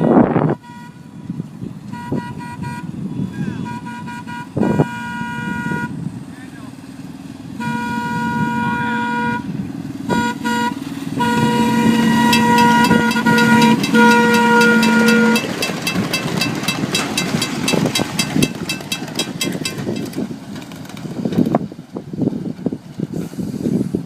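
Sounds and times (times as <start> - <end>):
train horn tooting: 0.5 - 1.1, 1.9 - 2.9, 3.6 - 6.0, 7.6 - 9.5, 10.1 - 16.5
train passing clicks: 11.6 - 21.8.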